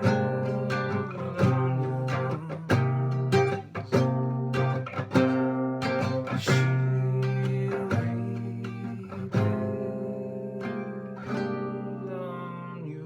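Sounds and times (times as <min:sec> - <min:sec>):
acoustic guitar strumming chords: 0:00.0 - 0:13.0.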